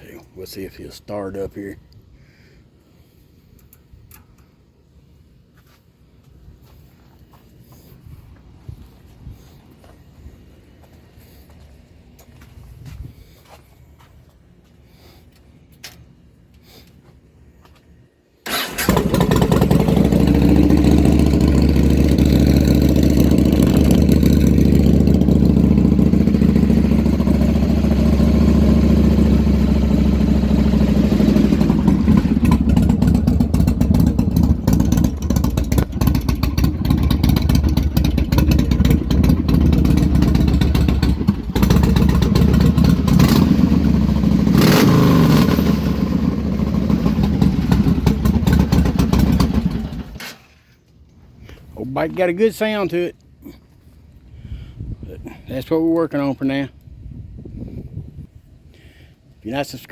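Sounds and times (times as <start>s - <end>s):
motorcycle engine running: 18.5s - 50.2s.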